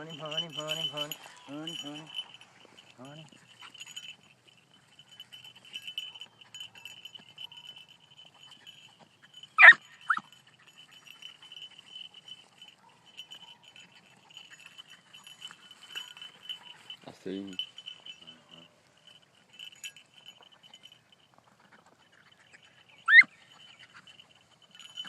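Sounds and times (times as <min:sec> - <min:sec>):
puppy yelping: 0:06.0 - 0:14.8, 0:23.0 - 0:24.2.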